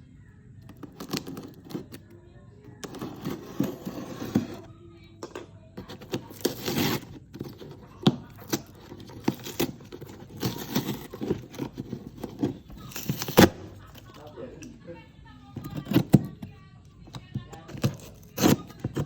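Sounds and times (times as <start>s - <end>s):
packaging rustling and tearing: 6.0s - 13.6s.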